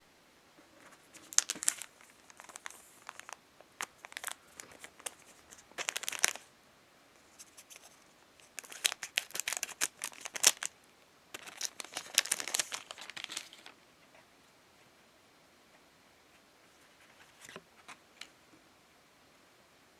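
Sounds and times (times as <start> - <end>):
wrappers crinkling and tearing: 1.2 - 6.5, 8.4 - 10.7, 11.4 - 13.8.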